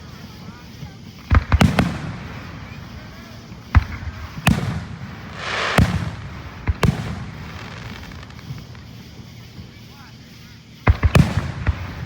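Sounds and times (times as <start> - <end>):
fireworks bangs: 1.3 - 10.3, 10.9 - 12.0
firework hiss: 1.7 - 10.5.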